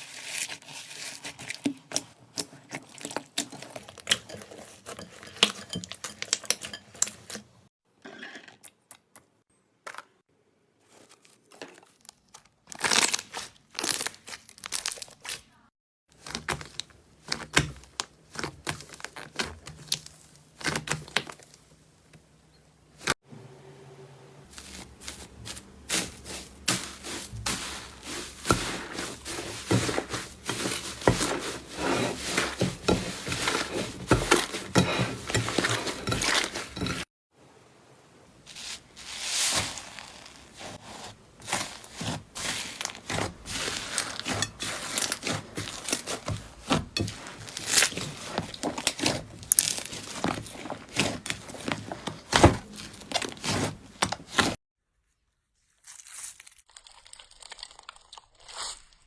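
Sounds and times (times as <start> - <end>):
slime squeezed crackling and popping: 55.8 - 59.0.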